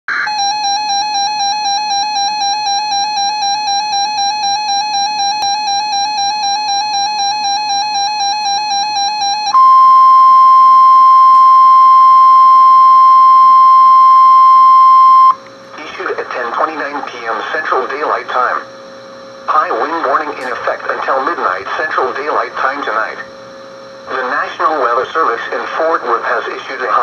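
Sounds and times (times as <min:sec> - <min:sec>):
warbling electronic alarm tone: 0:00.1 - 0:15.4
steady warning alarm tone: 0:00.2 - 0:27.0.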